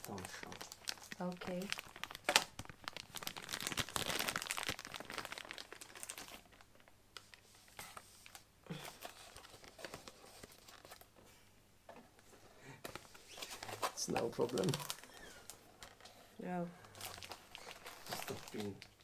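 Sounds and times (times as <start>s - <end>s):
plastic packaging crinkling: 0.0s - 11.1s, 12.9s - 16.1s, 16.8s - 19.0s.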